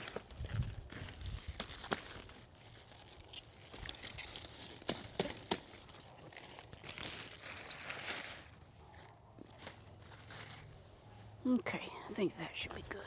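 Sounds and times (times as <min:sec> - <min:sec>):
leaves snapping: 0:00.0 - 0:08.5
leafy rustling: 0:00.0 - 0:11.6.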